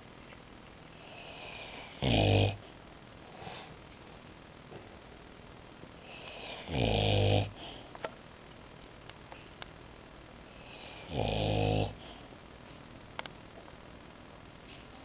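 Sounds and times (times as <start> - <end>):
dog snoring: 0.9 - 2.8, 6.0 - 7.9, 10.5 - 12.3.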